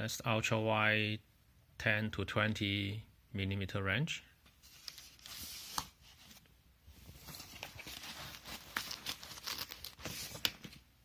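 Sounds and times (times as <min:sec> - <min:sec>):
camera bag rustling: 0:07.0 - 0:10.8.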